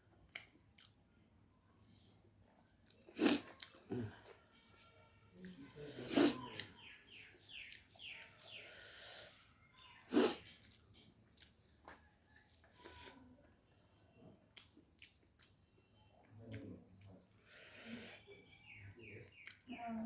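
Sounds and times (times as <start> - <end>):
chewing and smacking: 0.1 - 4.6, 5.4 - 8.4, 9.8 - 17.6, 19.3 - 19.7.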